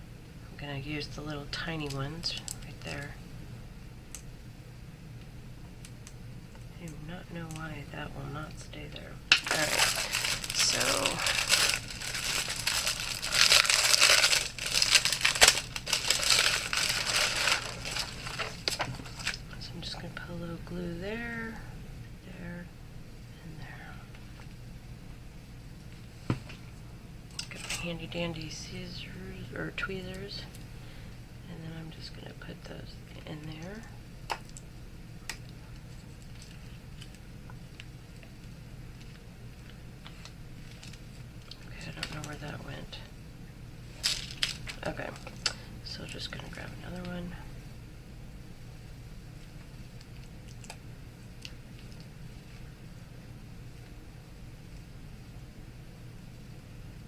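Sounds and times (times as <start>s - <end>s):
steady low hum: 0.0s - 57.0s
craft materials crinkling: 9.3s - 19.6s, 44.0s - 45.5s.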